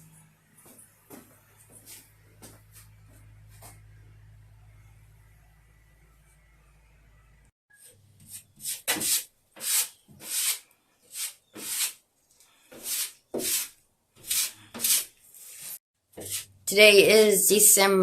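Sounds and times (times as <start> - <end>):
rasping rubbing strokes: 8.2 - 12.0, 12.7 - 16.6.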